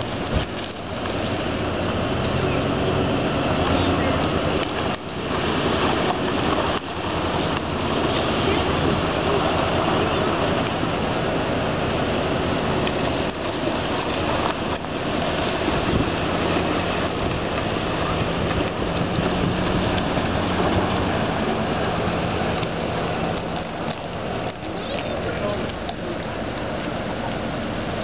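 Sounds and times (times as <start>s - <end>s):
strong wind on microphone: 13.3s - 23.5s.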